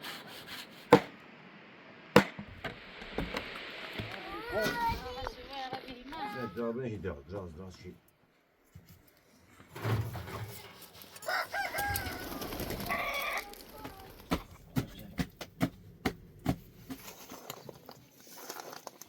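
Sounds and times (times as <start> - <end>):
sharp knocks: 0.9 - 1.2, 2.2 - 3.4
rooster crowing: 11.2 - 13.6.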